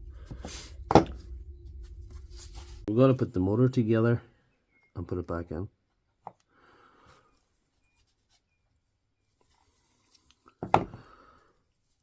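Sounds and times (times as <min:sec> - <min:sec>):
faint scraping and rubbing: 0:00.0 - 0:03.8.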